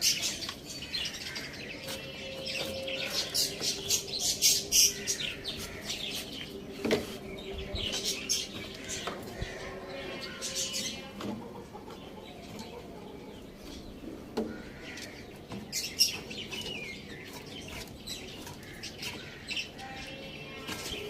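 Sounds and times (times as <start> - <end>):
chickens clucking and calling: 0.0 - 19.8.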